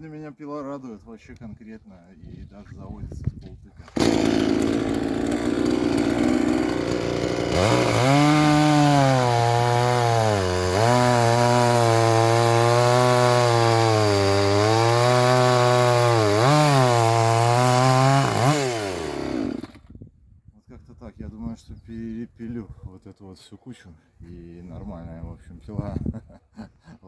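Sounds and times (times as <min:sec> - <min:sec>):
chainsaw revving: 0:03.9 - 0:19.8.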